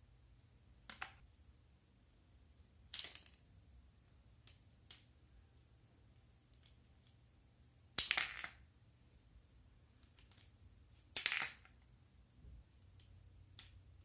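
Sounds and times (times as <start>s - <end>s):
sharp clicks of small hard pieces: 8.0s - 8.6s, 11.2s - 11.7s.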